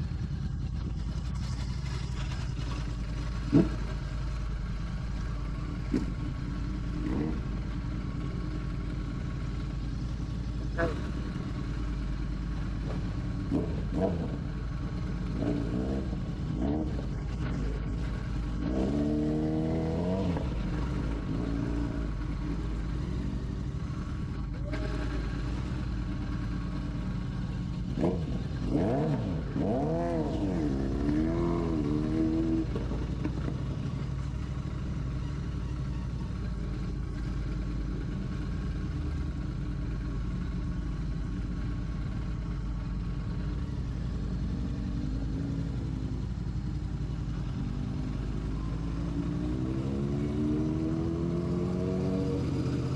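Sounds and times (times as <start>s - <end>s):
motorcycle engine rumbling: 0.0s - 52.9s.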